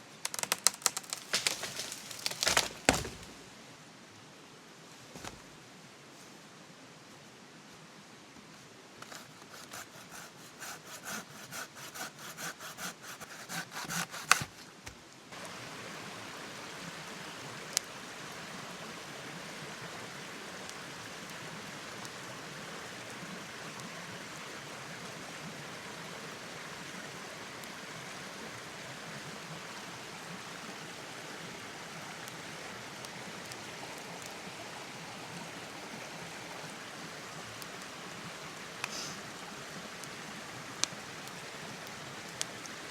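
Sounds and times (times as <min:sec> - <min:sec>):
wood cracking: 0:00.0 - 0:03.5, 0:13.4 - 0:15.0
hand saw cutting wood: 0:09.0 - 0:14.6
rain hissing: 0:35.3 - 0:42.9.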